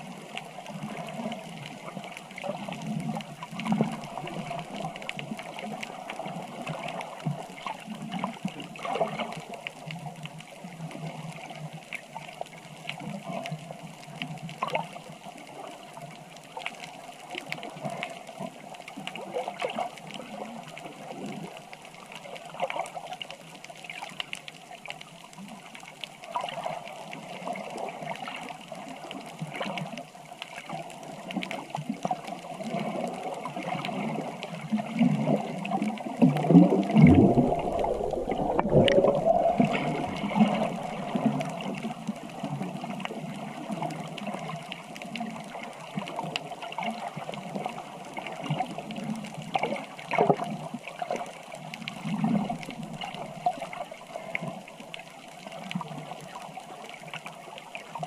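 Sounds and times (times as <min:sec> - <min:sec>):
water sloshing and gurgling: 0:00.0 - 0:09.8, 0:30.8 - 0:58.0
bubbling water surge: 0:03.6 - 0:05.1, 0:34.9 - 0:42.7.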